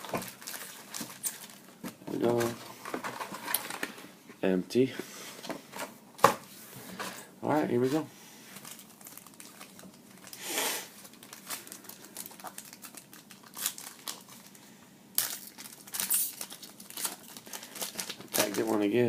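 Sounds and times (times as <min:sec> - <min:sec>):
wrapper tearing and crinkling: 0:00.0 - 0:01.7, 0:08.6 - 0:14.6, 0:15.2 - 0:18.8.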